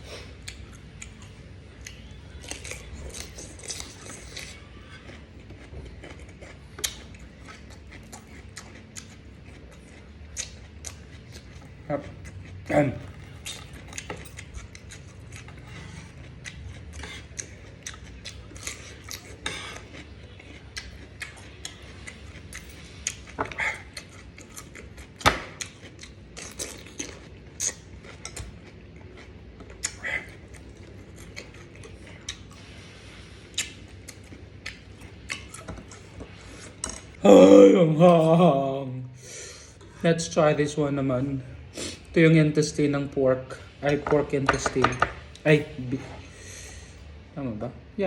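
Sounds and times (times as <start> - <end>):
chewing: 0.1 - 37.2.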